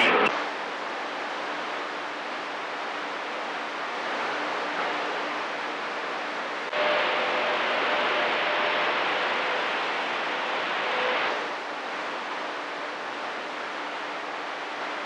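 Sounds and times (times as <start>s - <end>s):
radio carrier noise with tone: 0.0s - 0.3s, 6.7s - 11.6s
radio static hiss: 0.0s - 15.0s.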